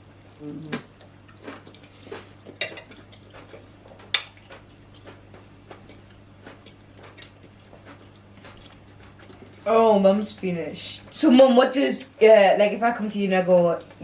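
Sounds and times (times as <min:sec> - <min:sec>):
faint low hum: 0:00.0 - 0:14.0
mouth smacks while eating: 0:00.5 - 0:09.6.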